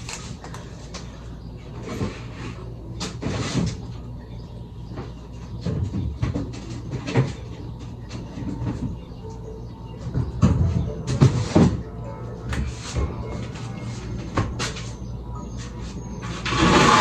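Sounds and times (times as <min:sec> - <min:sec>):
refrigerator hum: 0:00.0 - 0:17.0
knocks and clunks in refrigerator: 0:10.0 - 0:11.9.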